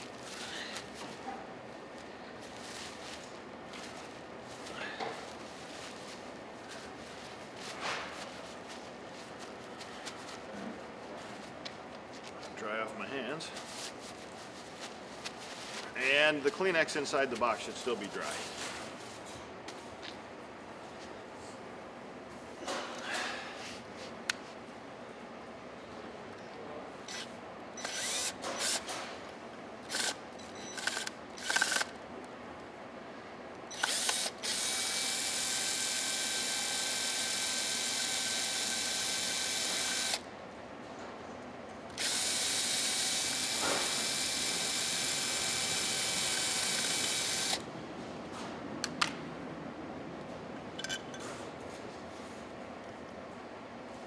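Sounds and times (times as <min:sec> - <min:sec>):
cordless drill running: 0:27.1 - 0:28.9, 0:29.9 - 0:32.0, 0:33.7 - 0:40.2, 0:41.9 - 0:47.6
tool and box clicks and clatters: 0:29.9 - 0:32.0.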